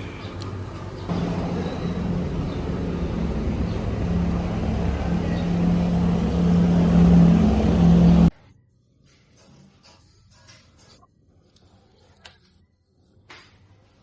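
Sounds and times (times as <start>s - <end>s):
road noise: 0.0s - 8.3s
vehicle engine hum: 0.0s - 8.3s.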